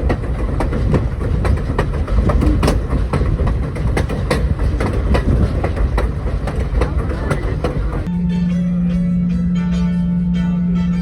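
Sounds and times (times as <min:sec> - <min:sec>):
wheels clicking over rails: 0:00.0 - 0:08.1
train rumbling along track: 0:00.0 - 0:08.6.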